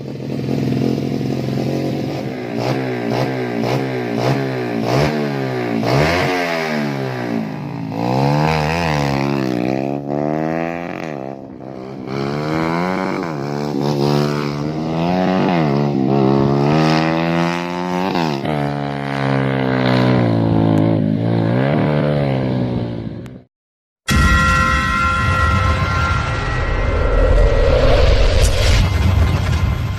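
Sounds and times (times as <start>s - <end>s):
motorcycle engine revving: 0.0s - 23.5s.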